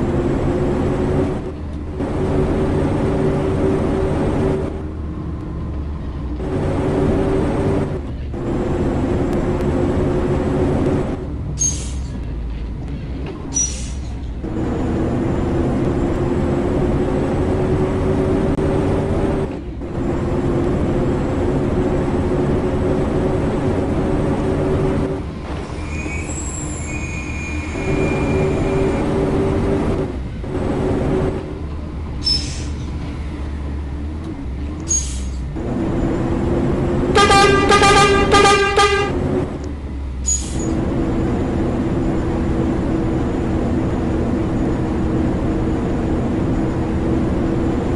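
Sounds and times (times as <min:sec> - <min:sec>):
train humming: 0:00.0 - 0:47.9
high-pitched train squeals: 0:11.6 - 0:12.2, 0:13.5 - 0:14.3, 0:25.5 - 0:29.2, 0:32.2 - 0:32.9, 0:34.9 - 0:35.4, 0:40.2 - 0:40.8.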